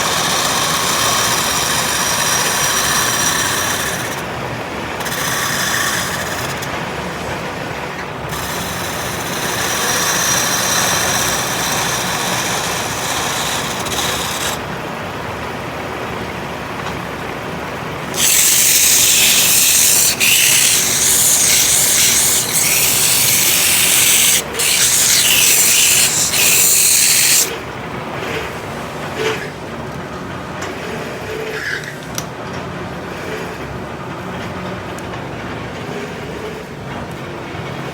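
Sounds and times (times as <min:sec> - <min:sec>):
tool grinding hard material: 0:00.0 - 0:14.8, 0:18.0 - 0:27.6.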